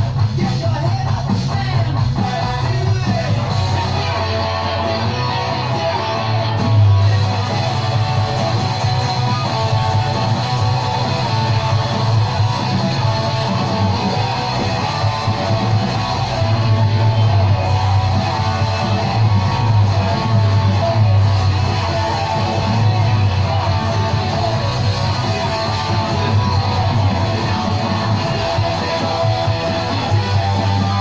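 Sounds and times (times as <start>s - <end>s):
guitar music: 0.0s - 31.0s
steady low bass: 1.8s - 31.0s.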